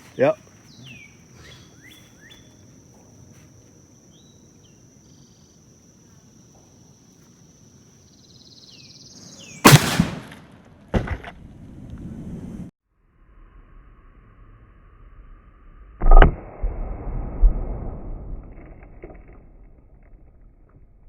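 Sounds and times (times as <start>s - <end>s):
birds chirping: 0.0s - 3.1s, 4.0s - 5.7s, 8.0s - 9.8s
rifle shot with echo: 9.6s - 10.5s.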